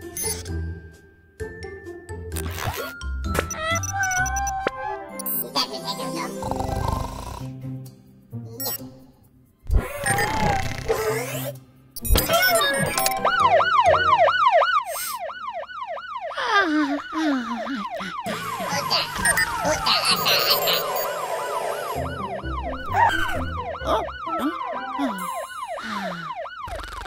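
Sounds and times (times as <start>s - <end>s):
music: 0.0s - 14.4s, 18.3s - 26.0s
cartoon siren wailing: 3.5s - 5.0s, 12.2s - 27.0s.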